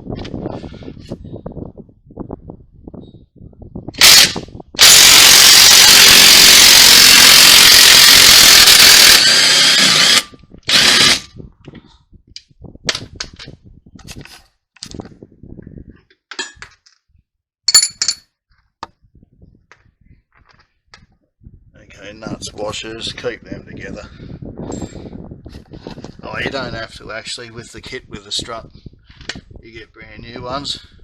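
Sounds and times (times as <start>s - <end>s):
impact wrench bursts: 4.0s - 11.2s.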